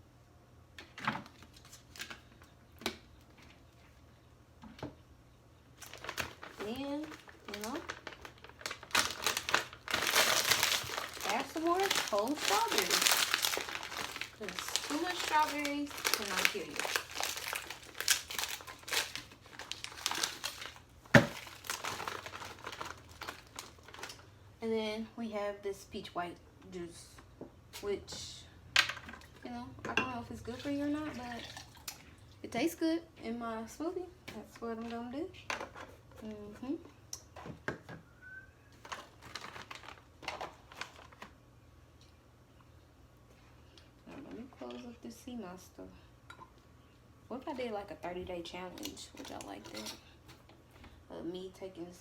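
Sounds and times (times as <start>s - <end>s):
plastic packaging crinkling: 5.8s - 24.3s, 38.8s - 41.4s, 48.7s - 50.0s.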